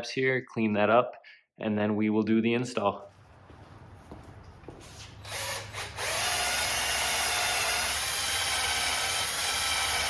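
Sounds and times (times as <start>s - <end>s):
power drill running: 4.9s - 10.0s.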